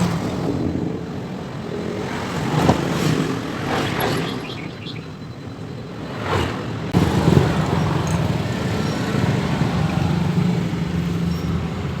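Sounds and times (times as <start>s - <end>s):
scooter engine running: 7.0s - 12.0s.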